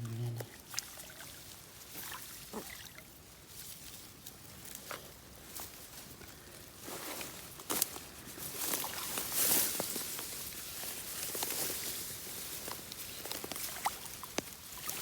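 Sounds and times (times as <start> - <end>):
close rustling and scuffing: 3.7 - 14.8.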